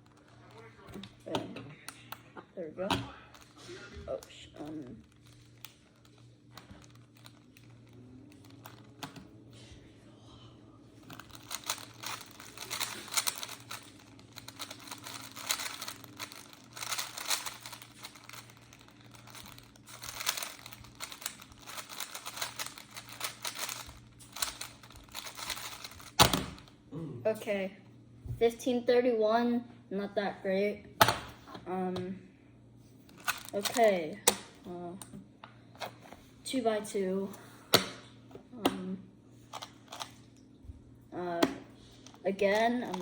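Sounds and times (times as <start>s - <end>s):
puzzle cube clicking: 11.2s - 26.6s.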